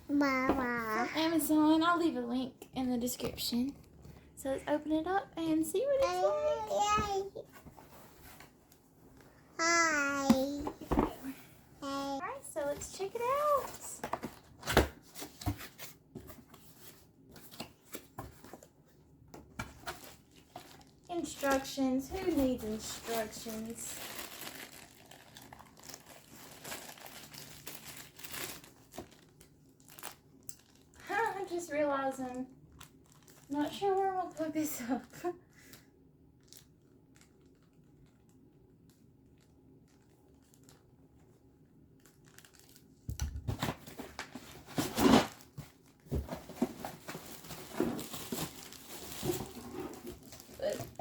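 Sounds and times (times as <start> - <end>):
packaging crinkling and rustling: 10.1 - 51.0
packaging ripping: 23.6 - 31.0, 47.2 - 50.8.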